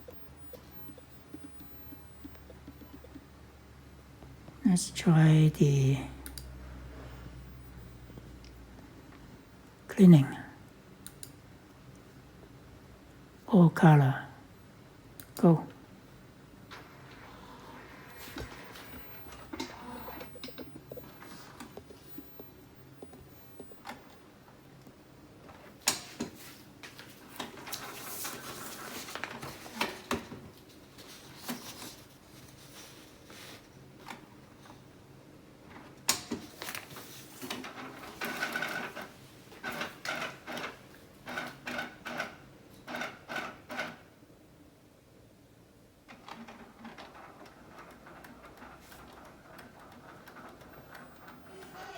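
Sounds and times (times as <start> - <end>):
whining motor pulses: 0.0 - 3.5, 16.8 - 24.0
printer motors whirring: 16.7 - 24.1, 46.2 - 51.9.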